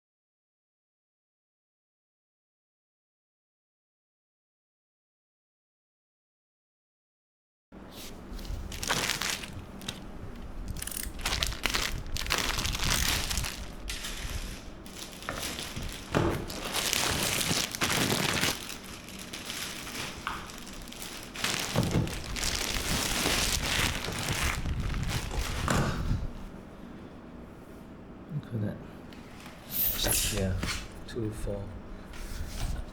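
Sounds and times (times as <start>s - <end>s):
plastic packaging crinkling: 8.0s - 26.0s.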